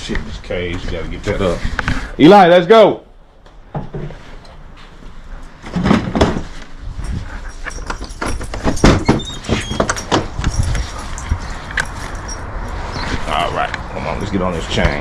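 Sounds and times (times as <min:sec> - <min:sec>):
metal cage and chain rattling: 0:06.9 - 0:13.3
high metallic rings: 0:10.0 - 0:13.0.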